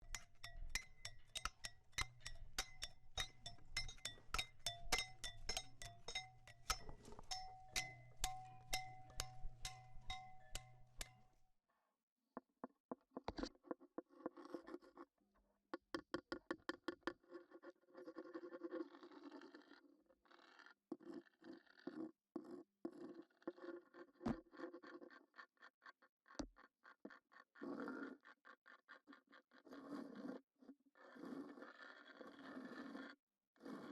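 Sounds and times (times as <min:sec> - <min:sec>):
scratchy rubbing: 0:00.0 - 0:11.2.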